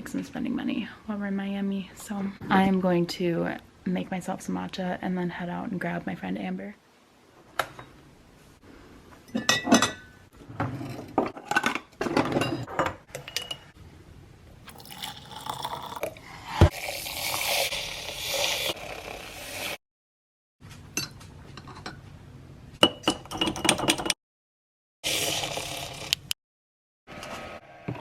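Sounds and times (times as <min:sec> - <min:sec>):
glass and utensils clinking: 0:09.3 - 0:10.1
liquid being poured: 0:14.7 - 0:18.5.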